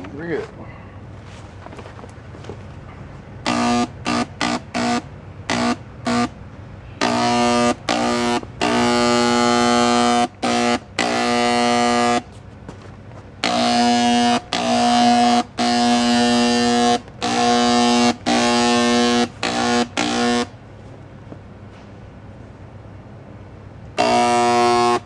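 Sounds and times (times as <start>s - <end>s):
paint sprayer buzzing: 3.4s - 12.8s, 13.4s - 20.9s, 24.0s - 25.0s.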